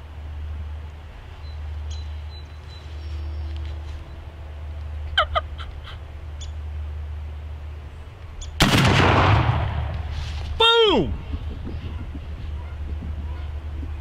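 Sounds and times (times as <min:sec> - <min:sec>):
shotgun blast with echo: 0:08.6 - 0:10.0.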